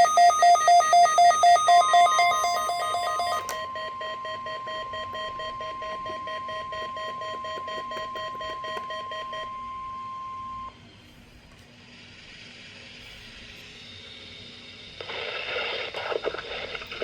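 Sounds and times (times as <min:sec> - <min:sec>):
rapid alarm beeps: 0:00.0 - 0:10.7
steady alarm tone: 0:00.0 - 0:10.7.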